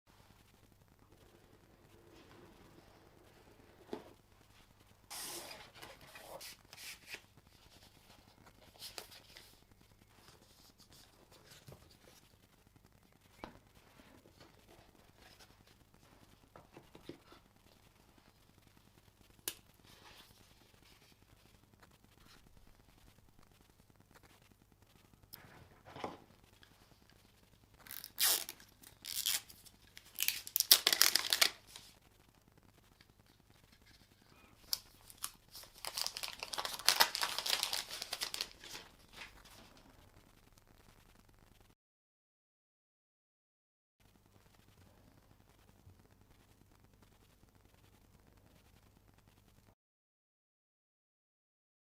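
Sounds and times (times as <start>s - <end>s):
packaging being torn open: 27.8s - 31.7s, 34.6s - 39.3s
packaging rustling scrape: 34.9s - 39.6s.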